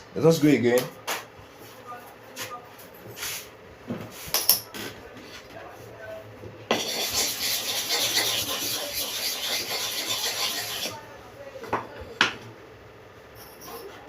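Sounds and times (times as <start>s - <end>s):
blade scraping on sharpening stone: 6.7s - 11.0s.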